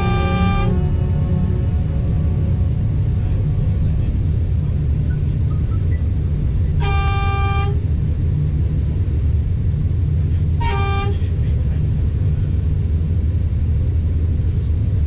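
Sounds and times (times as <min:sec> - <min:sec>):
train horn toot: 0:00.0 - 0:03.2, 0:06.8 - 0:07.9, 0:10.6 - 0:11.7
train rumbling: 0:00.0 - 0:15.0.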